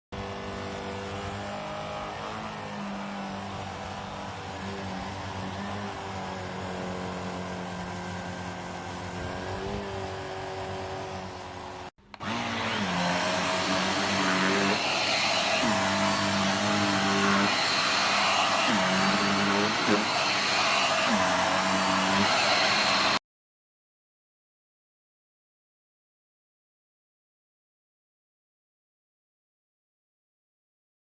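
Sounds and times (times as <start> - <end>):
vacuum cleaner motor hum: 0.2 - 23.2.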